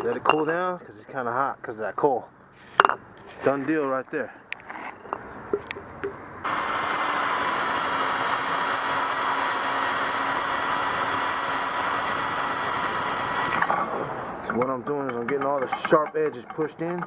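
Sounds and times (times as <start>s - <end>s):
machine running with whine: 6.4s - 14.3s.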